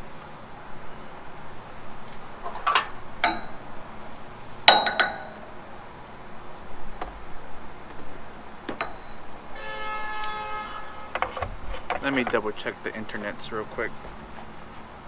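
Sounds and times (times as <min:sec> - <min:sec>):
hard parts clicking and knocking: 0:02.1 - 0:05.6, 0:06.8 - 0:09.5, 0:11.1 - 0:15.0.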